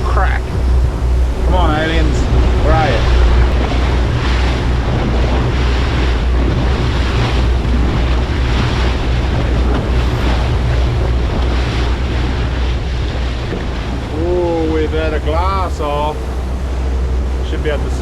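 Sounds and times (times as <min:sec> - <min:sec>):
boat engine low drone: 0:00.0 - 0:18.0
water rushing past boat hull: 0:00.0 - 0:18.0
wind buffeting microphone: 0:00.0 - 0:18.0.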